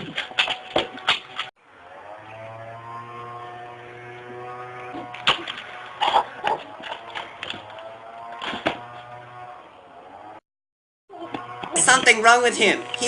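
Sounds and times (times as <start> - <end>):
sharp clacks and knocks: 0.0 - 1.5
electric motor hum: 0.0 - 10.4, 11.1 - 13.0
high whining tone: 1.6 - 10.4, 11.1 - 13.0.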